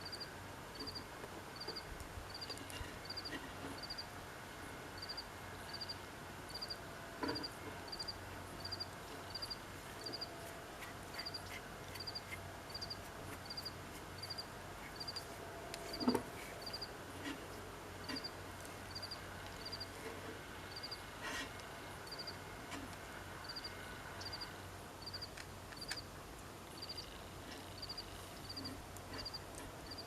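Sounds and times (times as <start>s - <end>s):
cricket chirping: 0.0s - 1.0s, 1.6s - 4.1s, 5.0s - 10.3s, 12.0s - 14.4s, 15.0s - 15.2s, 15.9s - 16.9s, 18.9s - 19.9s, 20.7s - 21.0s, 22.0s - 22.4s, 23.4s - 26.0s, 26.8s - 27.1s, 27.8s - 30.0s
faint low hum: 0.0s - 30.0s.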